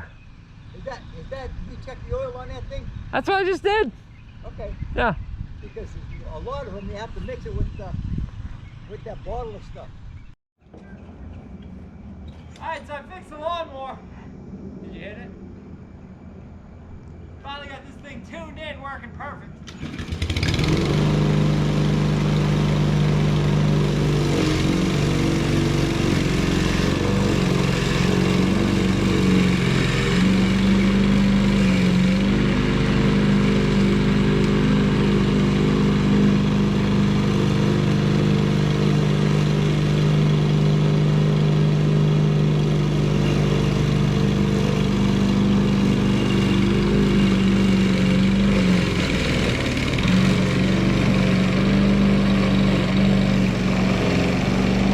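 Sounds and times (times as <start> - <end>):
lawn mower engine running: 19.6 - 54.9.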